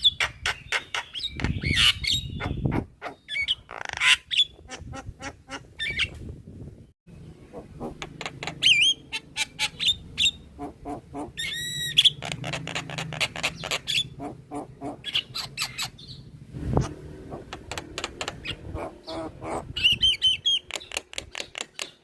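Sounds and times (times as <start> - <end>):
bird chattering with clicks: 17.5 - 18.6, 20.2 - 22.0.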